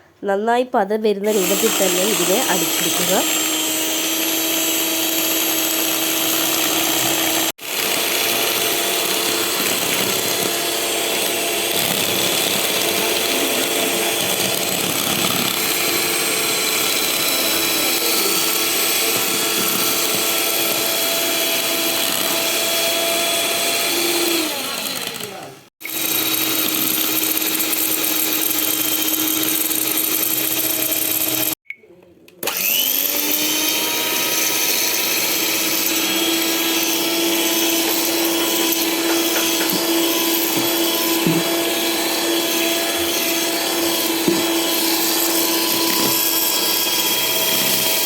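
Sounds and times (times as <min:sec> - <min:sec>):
electric hand blender running: 0:01.3 - 0:31.6, 0:32.4 - 0:48.0.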